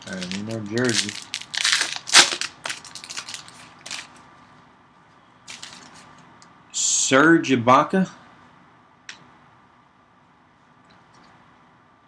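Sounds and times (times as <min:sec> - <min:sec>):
plastic wrapper tearing and crinkling: 0:00.0 - 0:04.2, 0:05.5 - 0:06.0.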